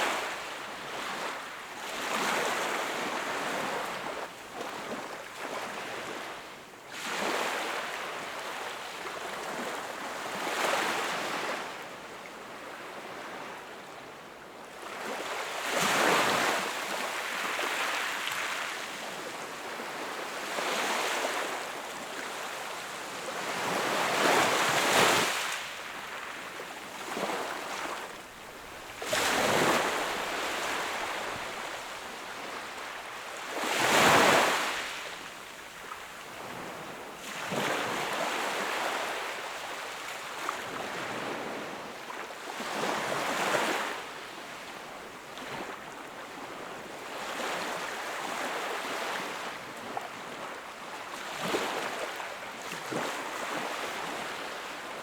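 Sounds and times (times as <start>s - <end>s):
sea waves breaking on shore: 15.0s - 41.7s.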